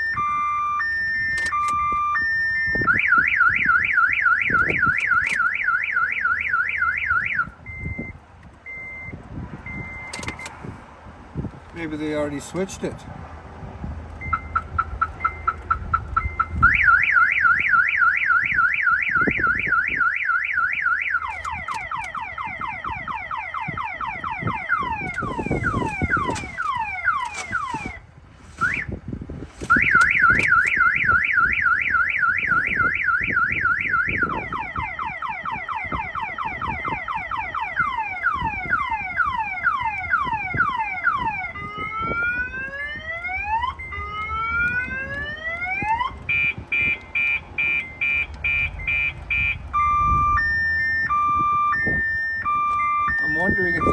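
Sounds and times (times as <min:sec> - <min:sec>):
car alarm siren: 0:00.0 - 0:10.5, 0:14.2 - 0:29.0, 0:29.6 - 0:53.9.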